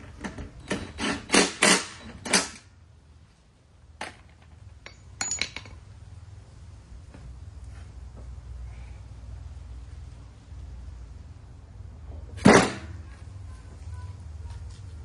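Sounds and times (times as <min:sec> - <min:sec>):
metal tools clinking and knocking: 0:04.1 - 0:05.8.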